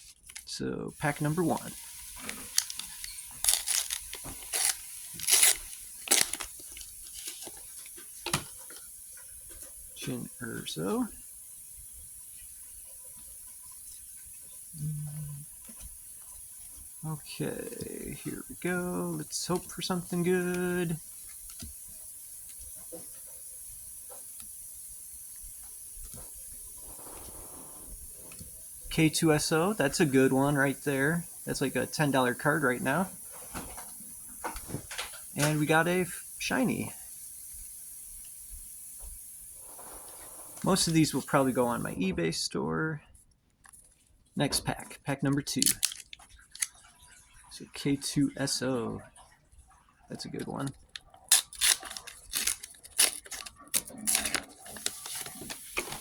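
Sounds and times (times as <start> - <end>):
foil wrapper tearing and crinkling: 0.0 - 8.8, 45.6 - 46.7, 50.8 - 56.0
cards sliding rustle: 0.0 - 8.9, 17.8 - 23.3, 45.6 - 46.7, 50.8 - 56.0
steady background hiss: 0.0 - 43.1, 50.1 - 56.0.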